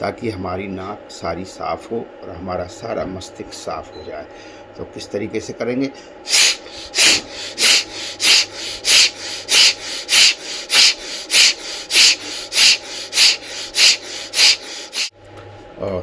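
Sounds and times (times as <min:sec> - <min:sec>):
forceful breathing through nose: 0:06.3 - 0:15.1.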